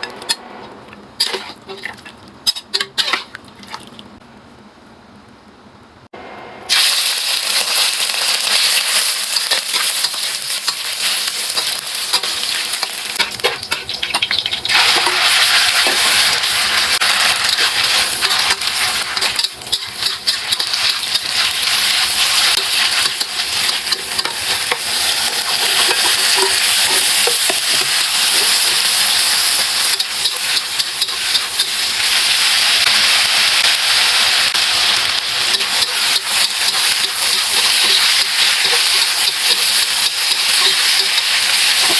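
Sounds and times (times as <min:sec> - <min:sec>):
crackles as food is stirred: 0:00.0 - 0:05.3, 0:06.7 - 0:41.9
food sizzling in hot oil: 0:06.7 - 0:41.9.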